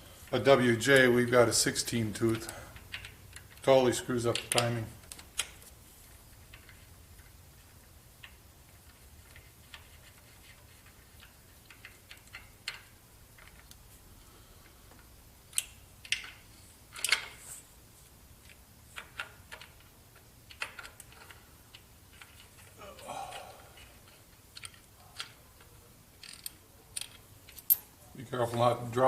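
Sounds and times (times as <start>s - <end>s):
faint low hum: 0.0s - 29.0s
tools clicking and metal clinking: 2.2s - 5.6s, 9.2s - 13.8s, 15.0s - 17.4s, 18.4s - 28.0s.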